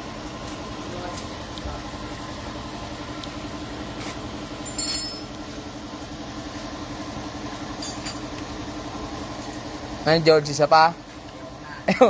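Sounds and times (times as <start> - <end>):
car engine idling: 0.0 - 12.0
ringing metal clinks: 4.6 - 5.4, 7.8 - 8.3.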